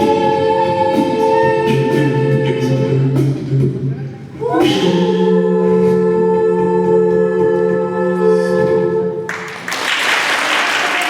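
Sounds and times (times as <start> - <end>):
a cappella vocal chord: 0.0 - 9.6
audience applause: 9.3 - 11.0.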